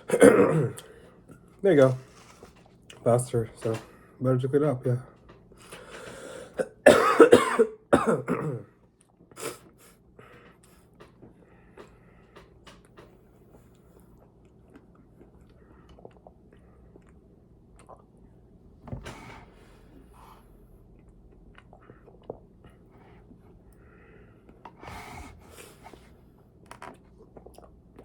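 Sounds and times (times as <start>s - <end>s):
person coughing: 0.0s - 0.9s, 6.5s - 8.7s.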